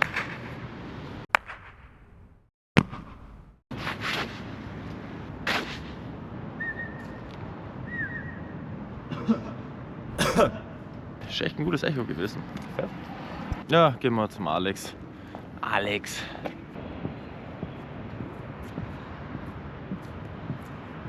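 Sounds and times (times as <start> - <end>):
sharp claps with echo: 1.3 - 3.6.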